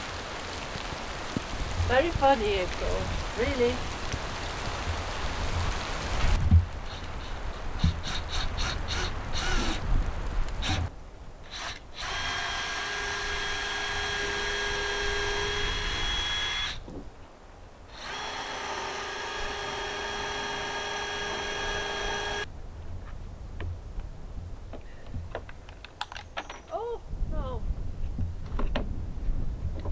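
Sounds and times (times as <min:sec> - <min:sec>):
power drill running: 0:07.8 - 0:09.9, 0:10.6 - 0:10.9, 0:11.5 - 0:16.8, 0:17.9 - 0:22.5.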